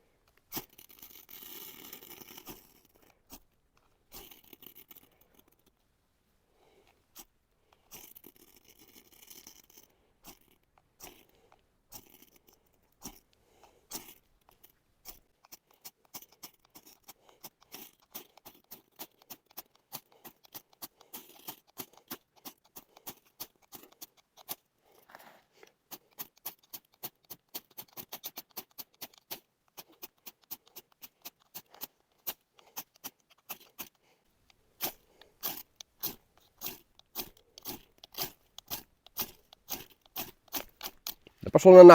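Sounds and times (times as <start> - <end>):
flint scraping knife blade: 34.8 - 41.2.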